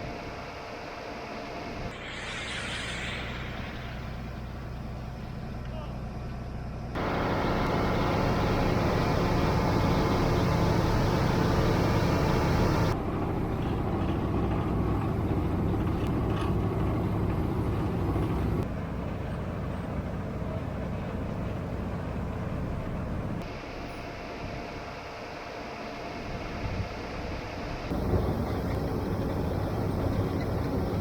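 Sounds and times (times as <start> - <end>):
road-works machinery running: 0.0 - 31.0
truck engines running: 3.3 - 23.4, 27.9 - 31.0.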